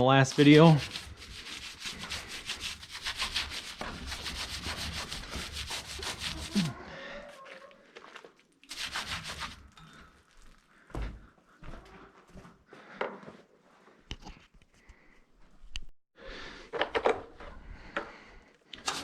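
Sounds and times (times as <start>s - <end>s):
rhythmic scrubbing strokes: 0.0s - 6.8s.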